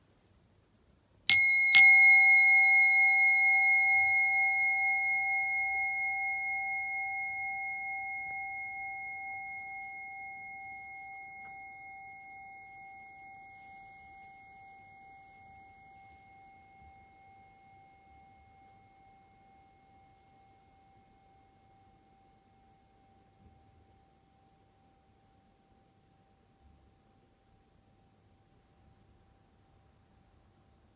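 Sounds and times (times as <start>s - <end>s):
singing bowl ringing: 1.3s - 23.4s.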